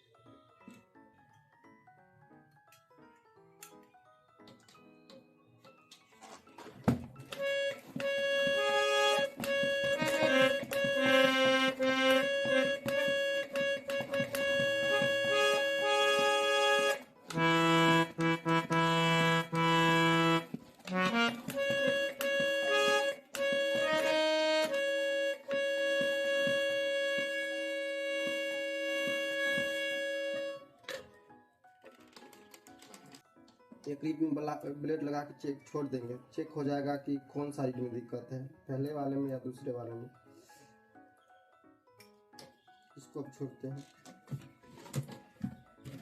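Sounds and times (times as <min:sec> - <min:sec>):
harmonium chords: 0:07.1 - 0:30.9.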